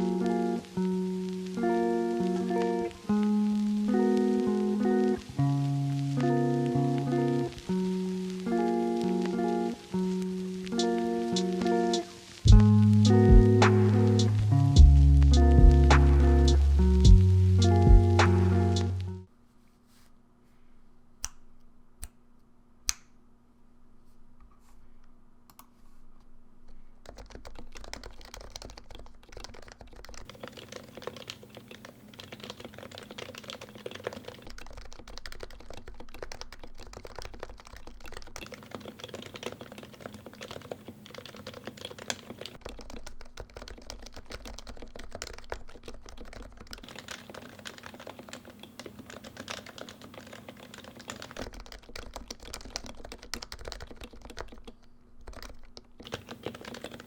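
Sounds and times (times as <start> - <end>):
keyboard typing: 6.2 - 19.2, 27.0 - 57.0.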